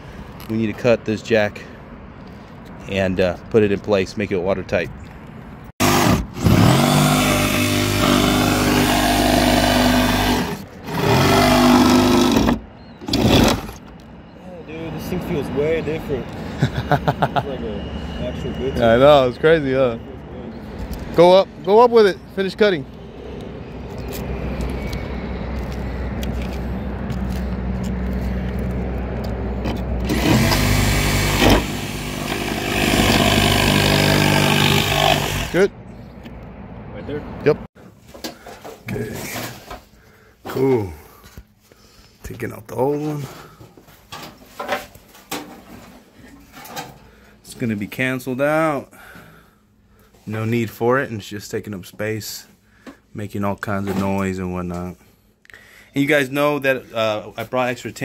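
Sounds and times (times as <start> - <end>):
power saw cutting metal: 5.8 - 13.8, 30.0 - 35.6.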